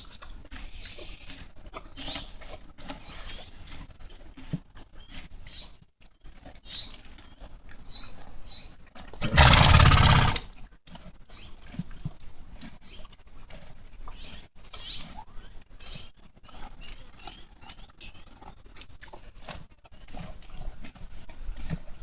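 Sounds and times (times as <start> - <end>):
horse munching feed: 9.0 - 12.8, 18.4 - 22.0
horse snorting: 9.1 - 10.6.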